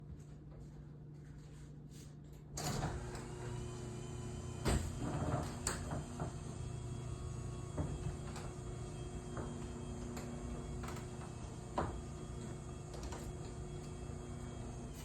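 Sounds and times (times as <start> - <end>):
garage door opener running: 2.6 - 15.0.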